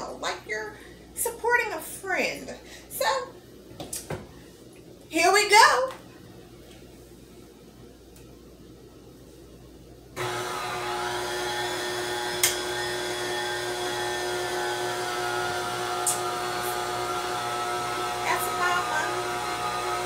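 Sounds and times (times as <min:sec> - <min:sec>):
stand mixer motor running: 0:10.2 - 0:20.0.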